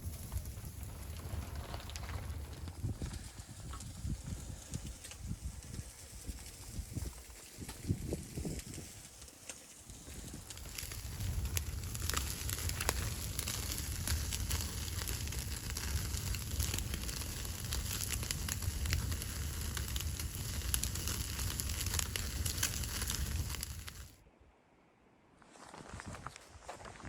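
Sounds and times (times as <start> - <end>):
low rumble: 0.0 - 5.6
wood fire crackling and popping: 0.0 - 24.2.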